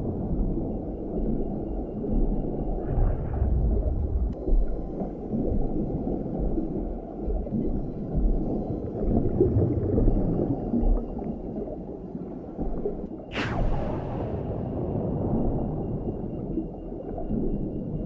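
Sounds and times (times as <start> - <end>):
churning river water rumble: 0.0 - 18.0
sharp rush of noise: 13.3 - 15.8.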